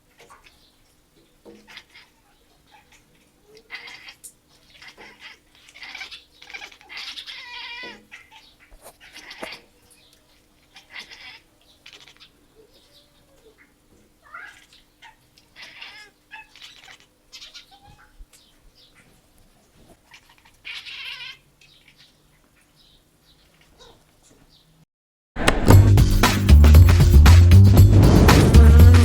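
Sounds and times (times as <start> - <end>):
cats chirping and chattering: 1.6 - 9.8, 10.6 - 18.2, 19.8 - 22.7, 23.4 - 24.1.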